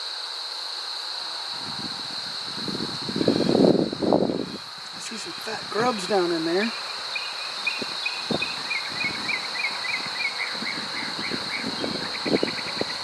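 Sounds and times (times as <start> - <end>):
high insect trill: 0.0 - 13.0
bird chirping: 6.4 - 13.0.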